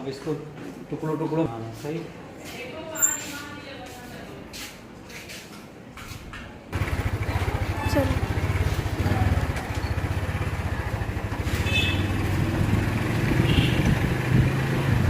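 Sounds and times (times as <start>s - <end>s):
motorcycle engine running: 6.7s - 15.0s.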